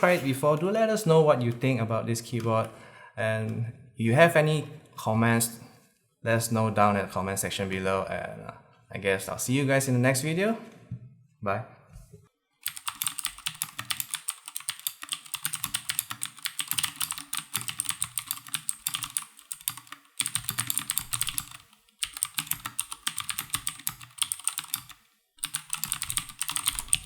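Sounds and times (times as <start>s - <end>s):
fast mechanical keyboard typing: 12.6s - 27.0s.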